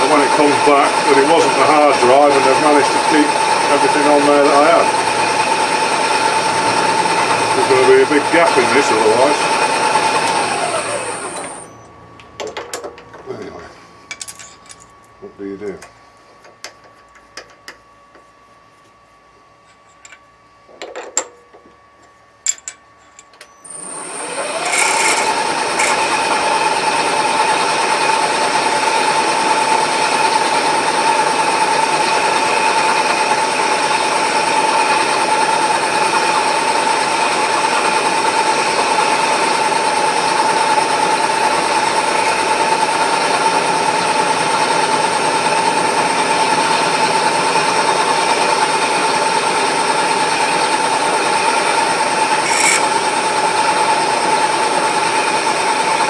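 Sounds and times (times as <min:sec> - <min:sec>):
machine tool whining: 0:00.0 - 0:12.0, 0:23.0 - 0:45.8, 0:51.1 - 0:56.0.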